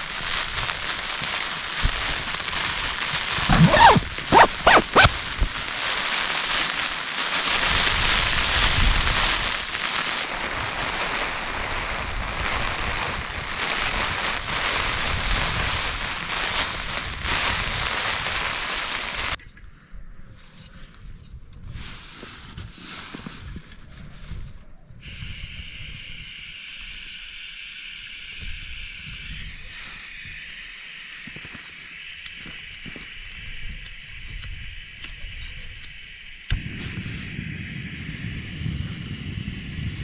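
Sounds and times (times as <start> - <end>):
rain: 0.0 - 19.4
sweeping noises: 3.4 - 5.1.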